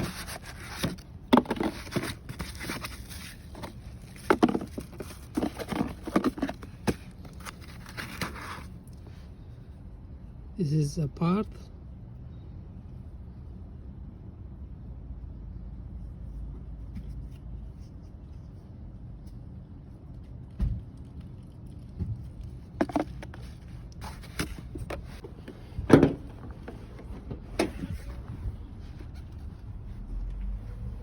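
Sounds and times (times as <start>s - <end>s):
low steady rumble: 0.0s - 31.0s
knocks and clicks of handling: 24.2s - 28.2s.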